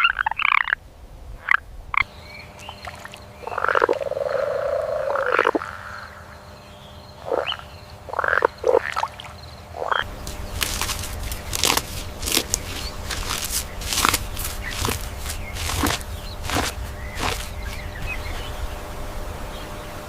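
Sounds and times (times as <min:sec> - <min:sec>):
frog croaking: 0:00.0 - 0:00.8, 0:01.4 - 0:10.1.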